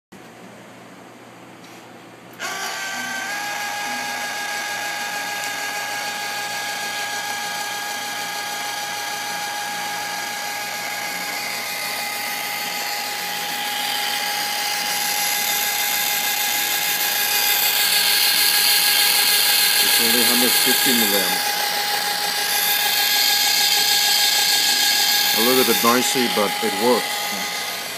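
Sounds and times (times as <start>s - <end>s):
motor whining through gearing: 2.4s - 27.9s
hissing mechanical noise: 12.4s - 27.9s.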